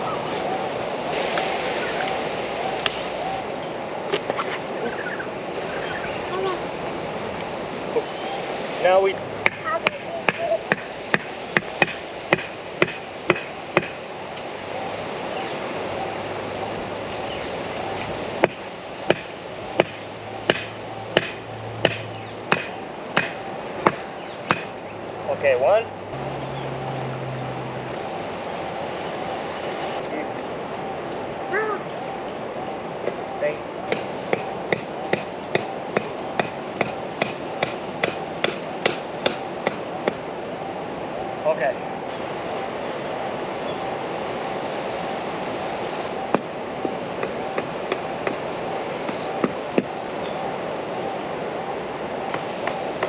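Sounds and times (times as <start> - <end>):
steady background noise: 0.0 - 53.0
hammer blows: 18.4 - 24.8, 33.9 - 40.2.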